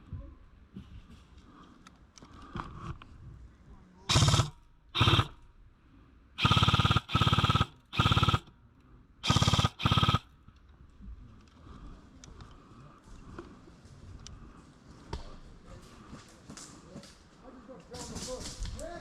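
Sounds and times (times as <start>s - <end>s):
airsoft gun firing bursts: 4.1s - 5.4s, 6.4s - 8.5s, 9.2s - 10.3s.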